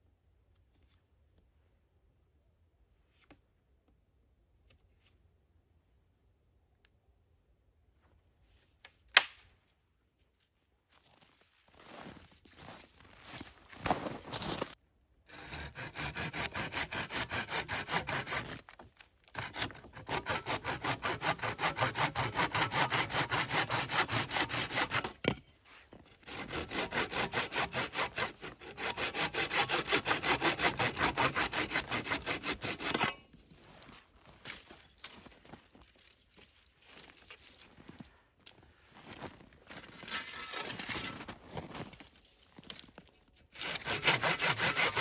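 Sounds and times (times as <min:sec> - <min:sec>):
hand saw cutting wood: 0:15.3 - 0:33.4, 0:39.8 - 0:41.4, 0:43.5 - 0:45.0.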